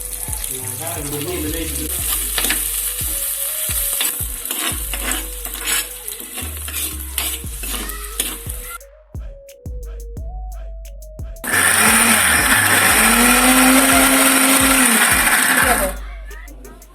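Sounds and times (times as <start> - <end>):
scraping strokes in pan: 2.8 - 8.4.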